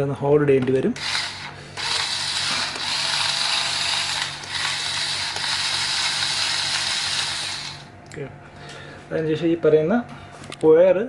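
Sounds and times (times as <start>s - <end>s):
electric drill boring into plastic: 1.0s - 7.9s.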